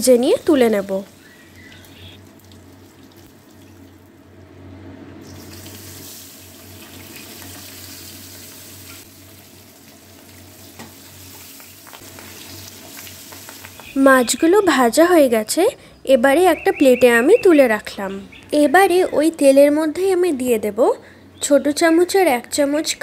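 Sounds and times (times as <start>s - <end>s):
fish sizzling in hot oil: 5.2s - 14.0s.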